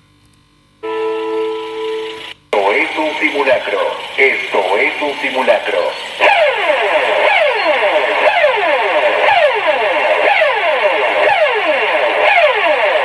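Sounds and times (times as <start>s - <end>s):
falling whoop siren: 6.2s - 13.0s.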